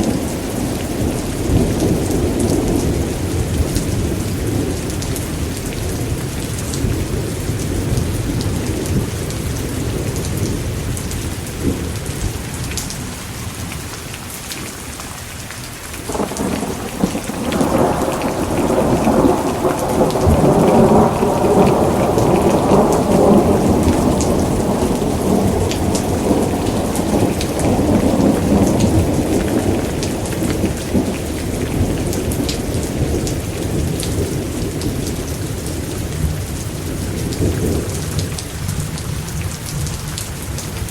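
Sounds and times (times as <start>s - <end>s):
heavy rain hissing: 0.0s - 40.9s
thunderclap: 16.1s - 35.3s
low thunder rumbling: 16.1s - 40.9s.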